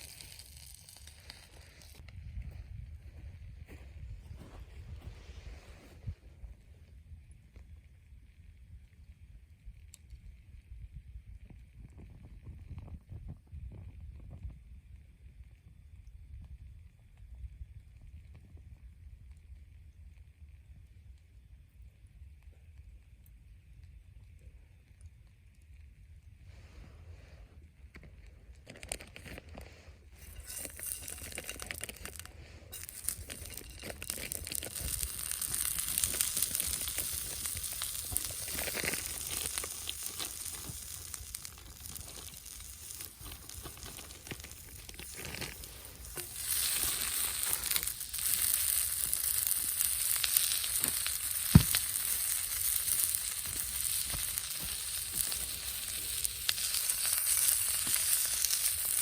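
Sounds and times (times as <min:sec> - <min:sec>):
food sizzling in a pan: 0:00.0 - 0:02.0, 0:30.2 - 0:59.0.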